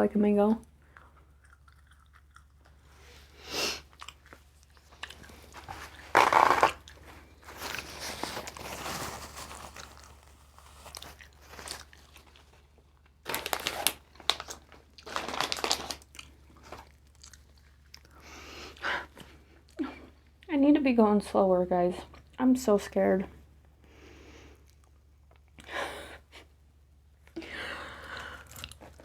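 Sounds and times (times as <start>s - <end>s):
person biting and chewing fruit: 0.8s - 8.6s.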